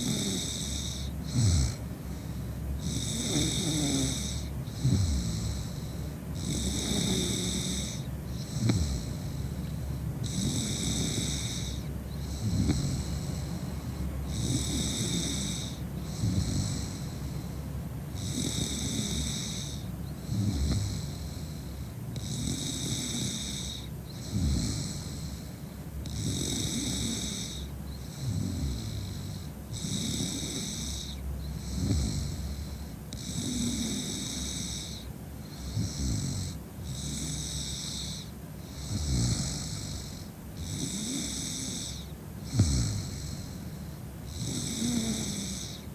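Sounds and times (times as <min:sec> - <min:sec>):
woman snoring: 0:00.0 - 0:01.9, 0:02.8 - 0:13.5, 0:14.3 - 0:17.5, 0:18.1 - 0:45.9.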